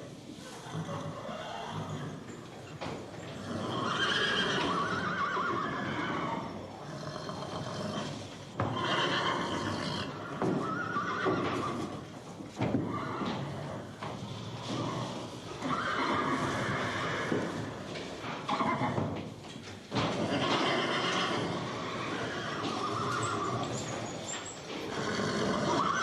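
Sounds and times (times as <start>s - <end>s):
horse neighing: 0.5s - 2.3s, 3.4s - 12.1s, 12.8s - 17.6s, 18.5s - 19.0s, 20.2s - 24.0s, 24.9s - 26.0s.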